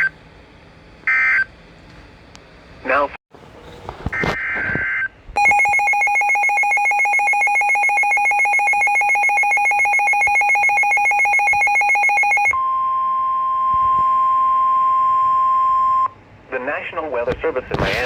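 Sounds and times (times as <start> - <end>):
pulsing electronic attention tone: 5.4 - 12.6
steady single-pitched alarm tone: 5.4 - 12.6.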